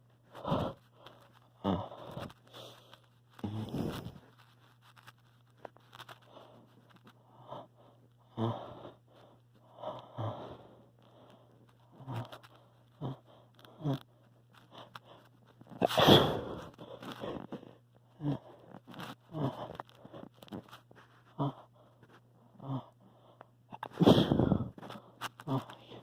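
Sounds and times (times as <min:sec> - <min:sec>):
person hitching breaths: 0:00.2 - 0:05.1, 0:05.9 - 0:26.0
loud sneeze: 0:15.8 - 0:16.5.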